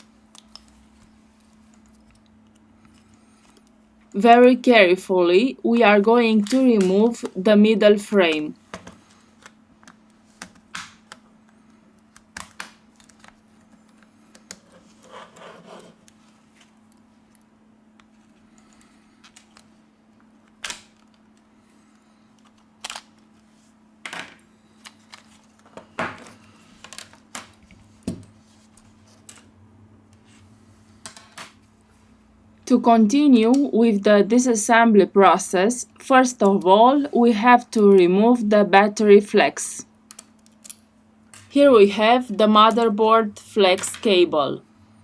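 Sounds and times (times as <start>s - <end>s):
faint steady hum: 0.0s - 45.0s.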